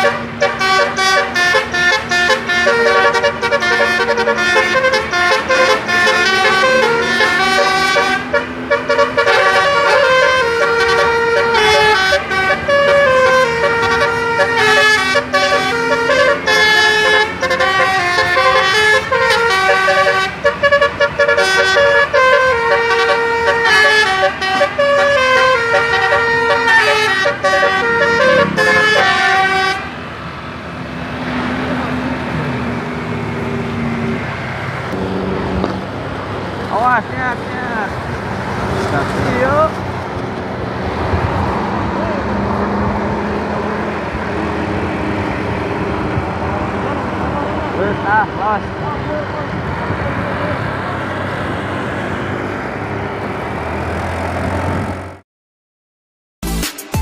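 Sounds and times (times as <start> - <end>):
musical air horn playing a tune: 0.0 - 30.0
bus engine and road noise: 0.0 - 55.2.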